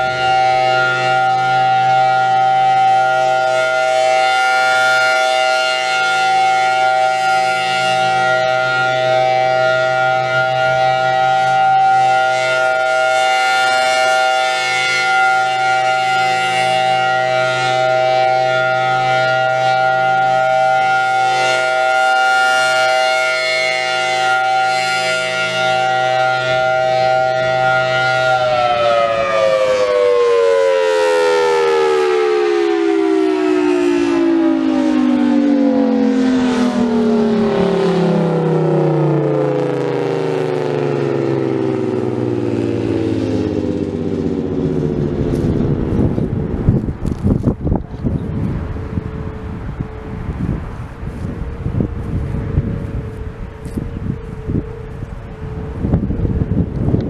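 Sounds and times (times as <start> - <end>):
tornado siren alert tone: 0.0 - 57.0
low hum: 35.8 - 57.0.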